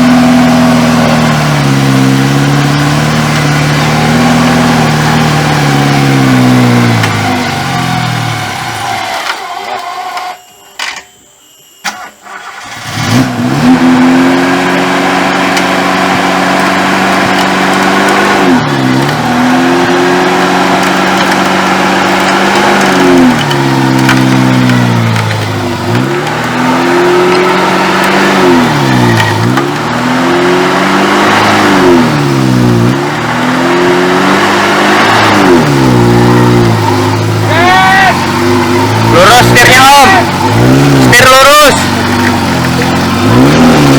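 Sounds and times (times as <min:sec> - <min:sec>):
car engine revving: 0:00.0 - 0:10.3, 0:12.2 - 0:43.9.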